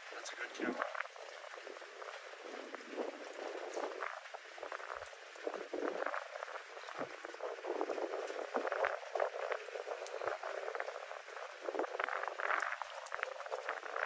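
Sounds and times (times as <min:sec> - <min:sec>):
rain pattering: 0:00.0 - 0:14.0.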